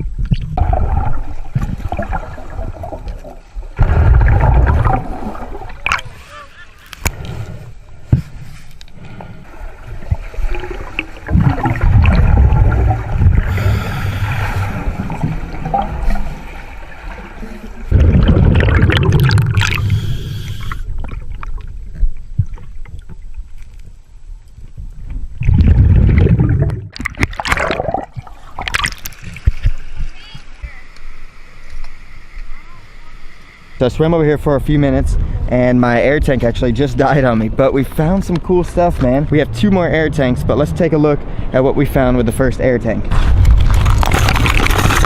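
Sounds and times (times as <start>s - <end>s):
exhaled air bubbling: 0.0s - 6.2s, 9.0s - 23.4s, 24.7s - 29.8s, 43.2s - 45.0s
regulator hissing inhale: 13.4s - 14.9s, 19.8s - 20.9s.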